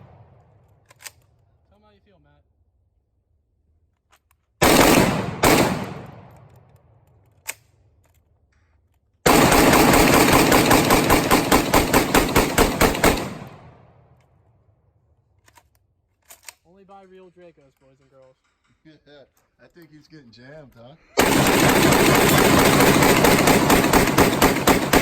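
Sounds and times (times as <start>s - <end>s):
small gun click: 0.4s - 1.4s, 6.0s - 9.1s, 15.3s - 16.6s
pistol gunshots echoing: 4.6s - 6.4s, 9.4s - 14.0s, 21.2s - 25.0s.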